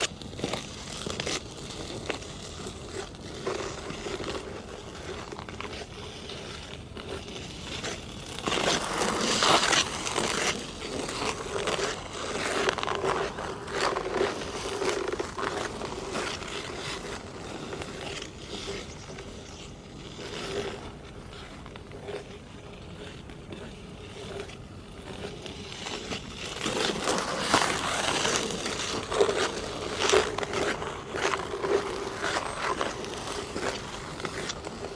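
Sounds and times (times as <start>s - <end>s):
ice skate blades scraping ice: 0.0s - 34.9s.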